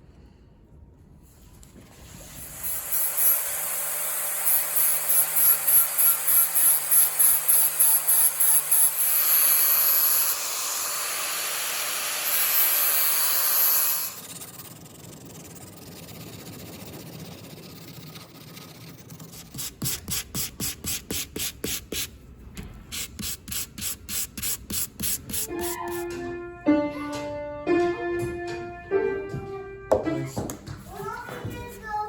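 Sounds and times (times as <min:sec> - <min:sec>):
grinding hiss on knife blade: 0:02.5 - 0:11.0, 0:12.2 - 0:14.7
rubbing strokes on blade: 0:12.1 - 0:22.1, 0:22.9 - 0:26.2.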